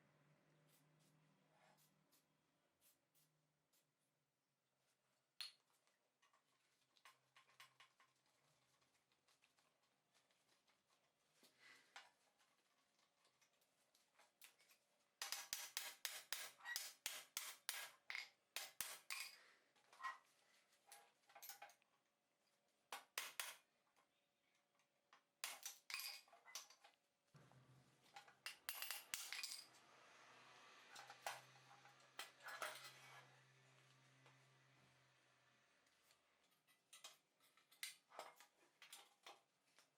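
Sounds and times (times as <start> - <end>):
metal hand tools clinking: 28.5 - 29.7.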